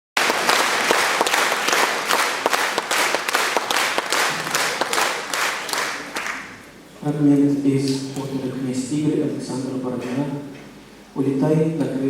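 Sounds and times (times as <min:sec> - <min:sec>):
audience applauding: 0:00.2 - 0:06.7.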